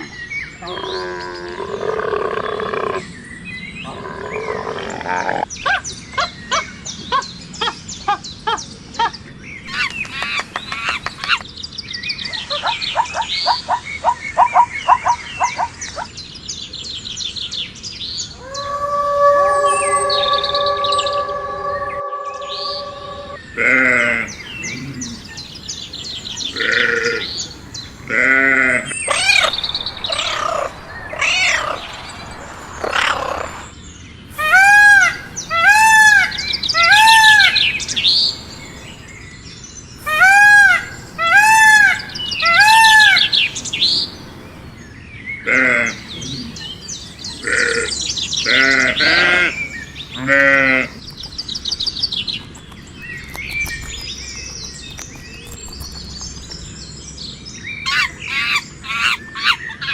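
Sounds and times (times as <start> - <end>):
animal bleating: 23.6 - 25.2, 26.4 - 31.6, 45.5 - 46.6, 47.4 - 51.3.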